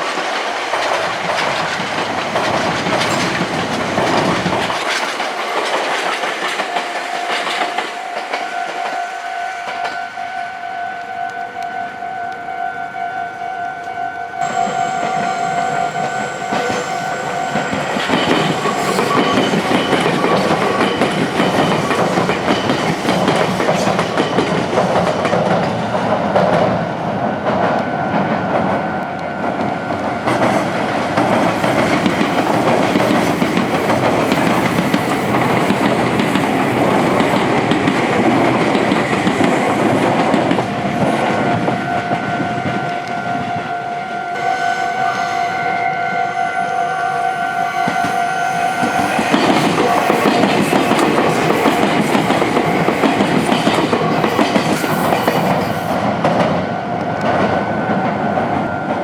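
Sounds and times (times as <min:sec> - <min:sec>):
train wheels clattering over rail joints: 0:00.0 - 0:08.9, 0:14.8 - 0:26.8, 0:30.2 - 0:42.8, 0:48.8 - 0:56.6
level-crossing warning bell: 0:00.0 - 0:59.0.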